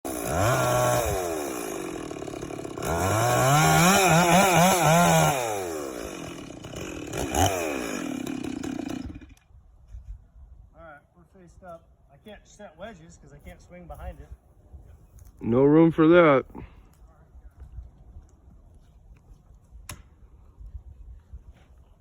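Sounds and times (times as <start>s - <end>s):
chainsaw revving and idling: 0.1s - 9.4s.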